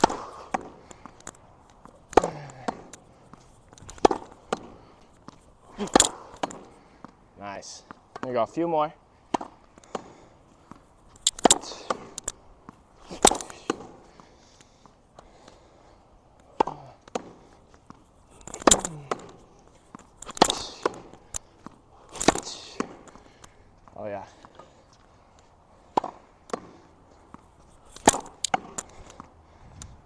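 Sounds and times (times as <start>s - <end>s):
racket hitting tennis ball: 0.0s - 7.2s, 9.2s - 15.6s, 16.4s - 23.5s, 25.8s - 29.3s
footwork scuffs: 0.0s - 8.4s, 9.1s - 30.0s
ball bouncing on wet court: 16.5s - 17.4s, 25.9s - 26.8s.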